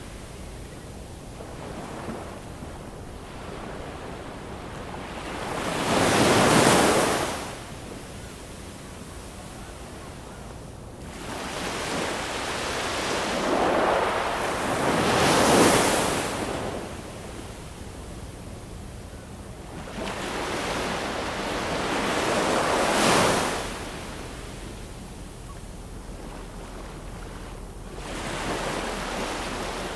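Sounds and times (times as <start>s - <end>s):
steady surf wash: 11.0s - 18.2s, 19.8s - 29.9s
ocean waves washing in: 11.1s - 17.2s.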